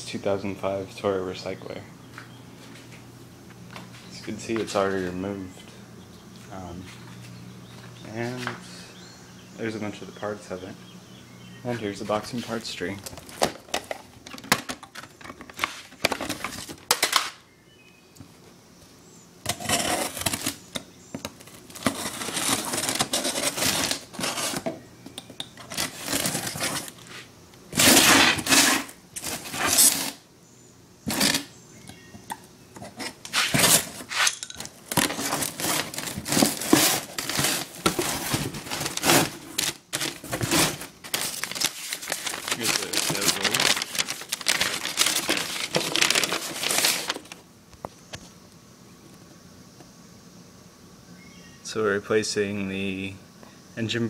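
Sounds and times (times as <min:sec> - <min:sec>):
packaging rustling and crinkling: 0:12.4 - 0:17.4, 0:19.5 - 0:24.7, 0:25.6 - 0:30.2, 0:32.8 - 0:47.4.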